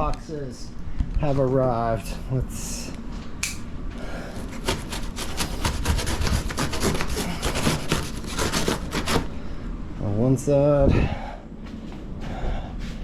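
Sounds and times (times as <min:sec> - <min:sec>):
hands scraping packaging: 0:04.2 - 0:09.3.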